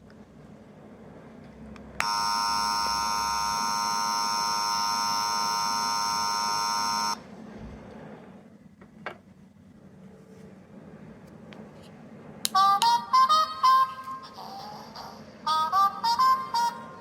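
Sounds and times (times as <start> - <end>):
electronic buzzer tone: 2.0 - 7.2.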